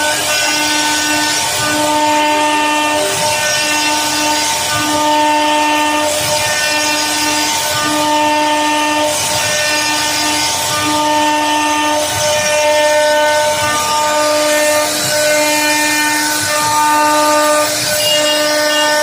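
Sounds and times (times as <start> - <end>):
router spindle whine: 0.0 - 19.0.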